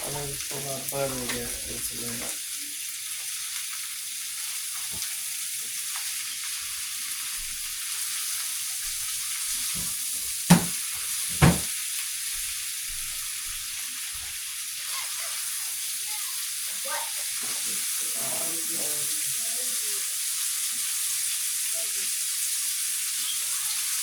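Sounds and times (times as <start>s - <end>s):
fried rice sizzling in a pan: 0.0s - 24.0s
sharp knocks: 10.5s - 11.7s.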